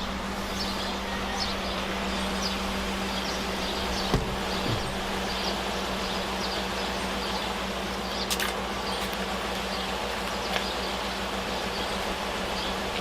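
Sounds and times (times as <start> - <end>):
air compressor humming: 0.0 - 6.2
truck engine idling: 0.0 - 13.0.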